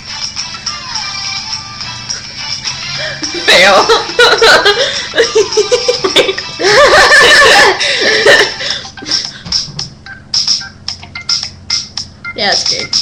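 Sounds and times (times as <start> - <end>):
girls laughing: 3.0 - 9.4
phone ringtone: 10.0 - 13.0.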